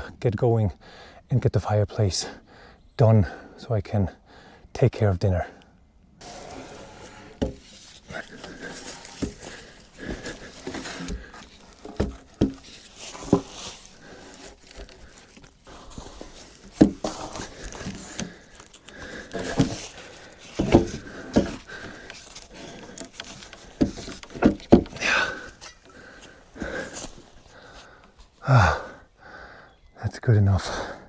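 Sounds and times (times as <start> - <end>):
wooden logs knocking: 6.2 - 28.0
rustling: 6.2 - 28.4.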